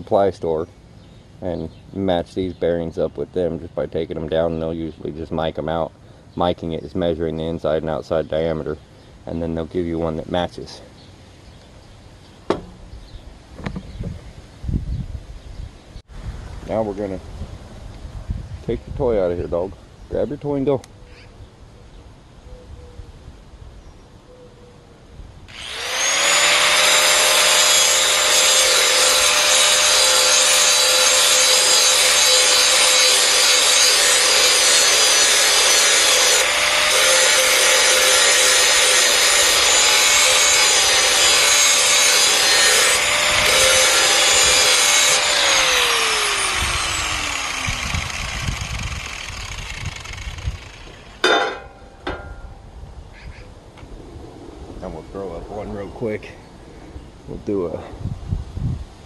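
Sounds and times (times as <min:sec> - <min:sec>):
electric grinder grinding steel: 0:25.5 - 0:51.6.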